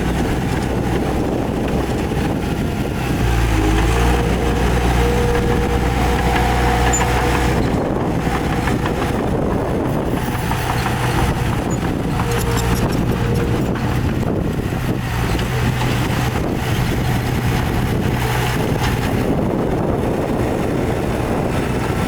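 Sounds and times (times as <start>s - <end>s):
heavy diesel engine running: 0.0s - 22.0s
steady whine: 3.1s - 14.9s.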